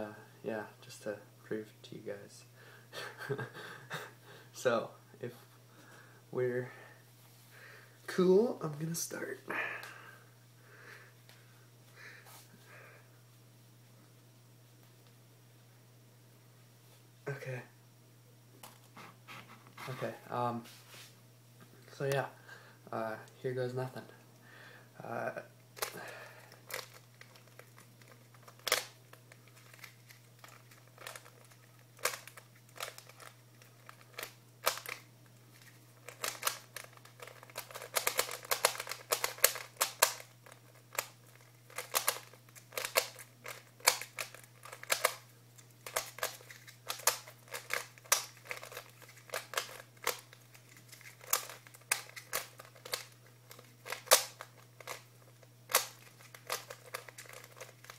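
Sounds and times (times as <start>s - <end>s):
steady low hum: 0.0s - 57.9s
puzzle cube clicking: 36.0s - 41.1s, 41.7s - 45.2s, 45.8s - 50.3s, 50.9s - 55.0s, 55.7s - 57.9s.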